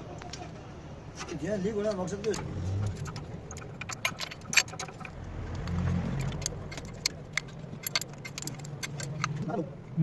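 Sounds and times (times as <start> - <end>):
small metal parts clinking: 2.2 - 9.6.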